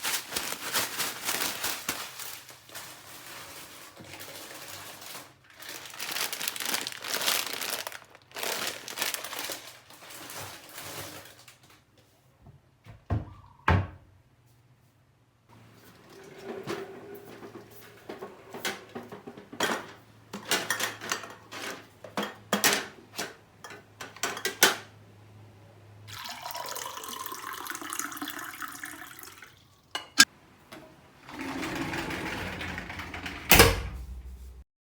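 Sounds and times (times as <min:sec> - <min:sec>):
sliding door running on track: 0:15.9 - 0:18.9, 0:31.2 - 0:34.4
water pouring: 0:26.1 - 0:30.2
trolley rattling: 0:31.2 - 0:34.5.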